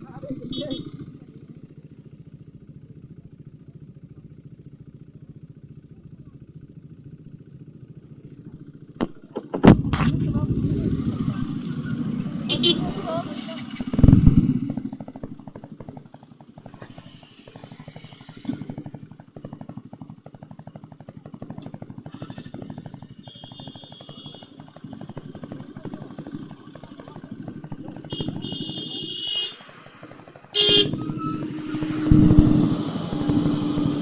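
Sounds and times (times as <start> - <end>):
motorcycle engine idling: 0.0 - 34.0
high horn-like tone: 12.4 - 13.2, 23.2 - 24.4, 30.6 - 32.6.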